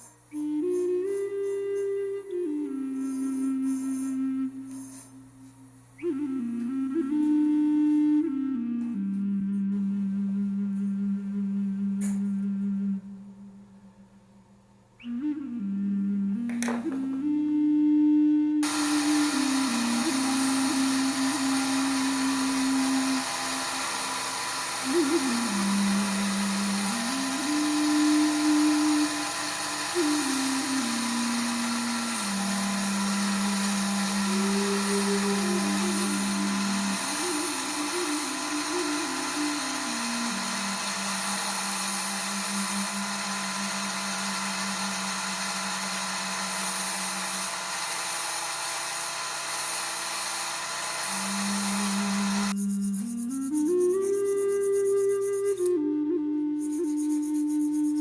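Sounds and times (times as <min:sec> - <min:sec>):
slow background music: 0:00.3 - 0:13.8, 0:25.0 - 0:42.3
power tool motor whining: 0:18.6 - 0:52.6.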